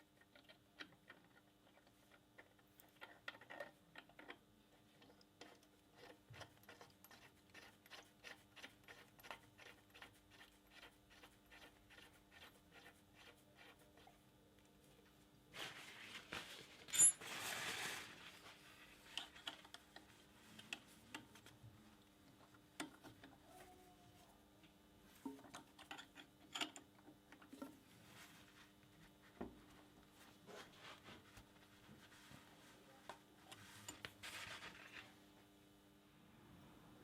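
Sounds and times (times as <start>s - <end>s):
tools clicking and tapping: 22.8s - 23.4s, 25.3s - 27.7s.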